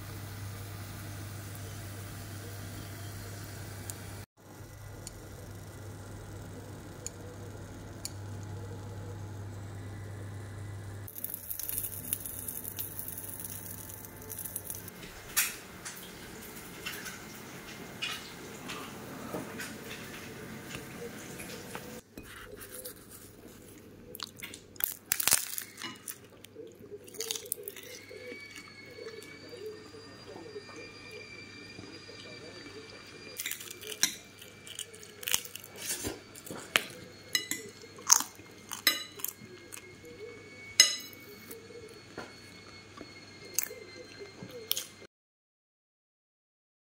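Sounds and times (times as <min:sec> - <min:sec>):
steady low hum: 0:00.0 - 0:45.1
utensils and dishes clinking: 0:11.1 - 0:23.4, 0:24.1 - 0:30.9, 0:31.8 - 0:45.1.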